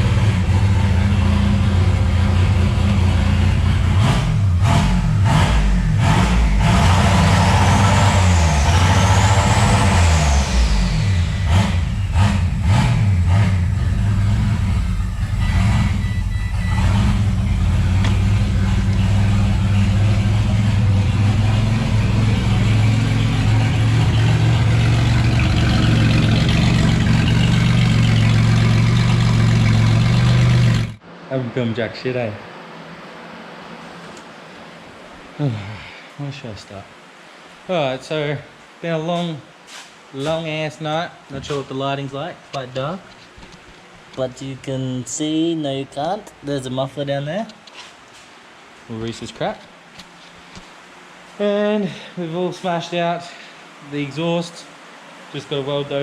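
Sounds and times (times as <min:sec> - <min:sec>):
car engine revving and idling: 0:00.0 - 0:31.3.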